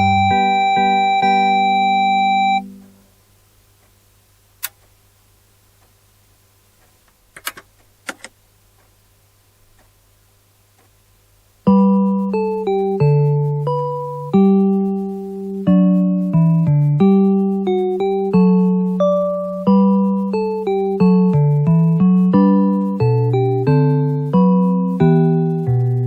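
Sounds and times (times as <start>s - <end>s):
electronic loudspeaker chime: 0.0s - 2.8s
faint clicks: 4.6s - 5.0s, 5.8s - 6.0s, 6.8s - 9.0s, 9.7s - 10.0s, 10.7s - 11.0s.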